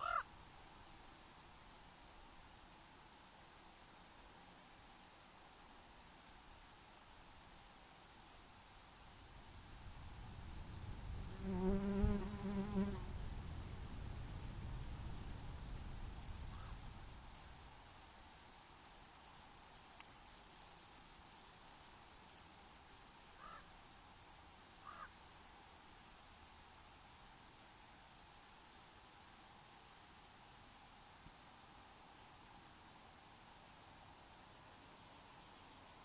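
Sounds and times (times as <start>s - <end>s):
cricket chirps: 9.1s - 30.1s
flying insect buzzing past: 9.9s - 13.3s
faint short calls: 24.8s - 25.2s.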